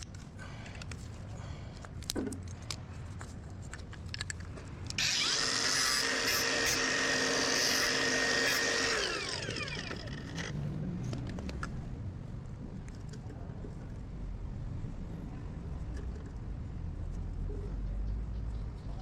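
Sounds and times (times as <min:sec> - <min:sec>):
power tool running and winding down: 0:05.0 - 0:10.6.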